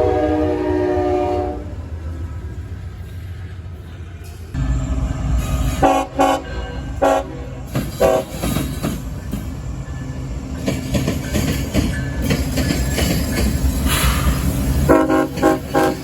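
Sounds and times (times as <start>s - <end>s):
locomotive air horn blasts: 0.0s - 1.8s, 5.6s - 8.4s, 14.9s - 16.0s
passing train rumble: 0.0s - 16.0s.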